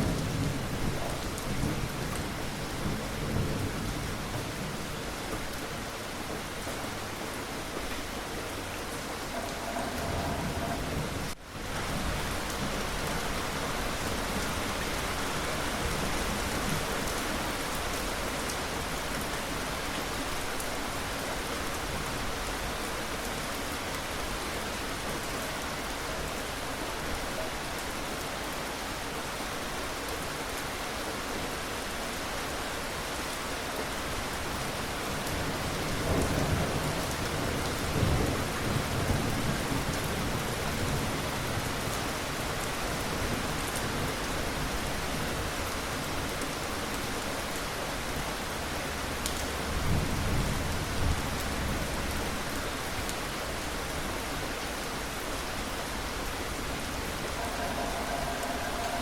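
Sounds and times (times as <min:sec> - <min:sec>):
steady rain: 0:00.0 - 0:59.0
thunder rumbling: 0:08.6 - 0:13.3, 0:56.3 - 0:59.0.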